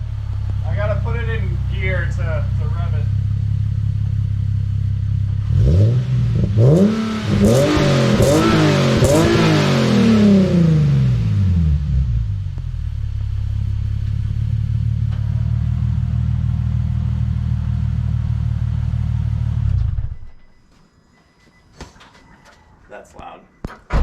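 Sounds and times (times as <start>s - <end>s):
loud car engine idling: 0.0s - 9.3s, 11.2s - 19.8s.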